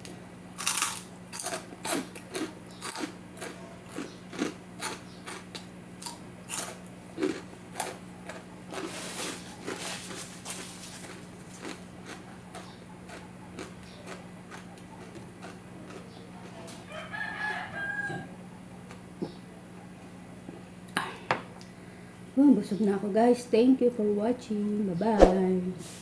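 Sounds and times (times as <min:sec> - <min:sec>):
chewing crunchy food: 0:00.0 - 0:17.6, 0:18.8 - 0:19.4.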